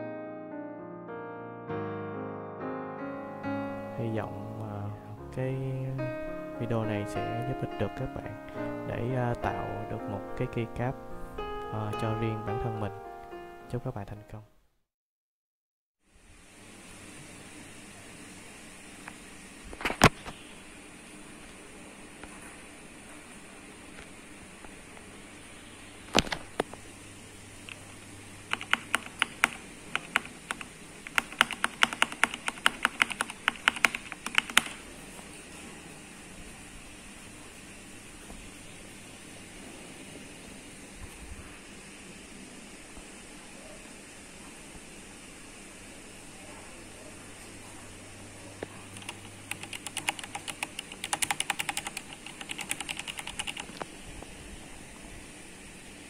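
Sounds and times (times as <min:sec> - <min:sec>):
mechanical keyboard key clicks: 0:28.5 - 0:34.8, 0:49.0 - 0:53.8.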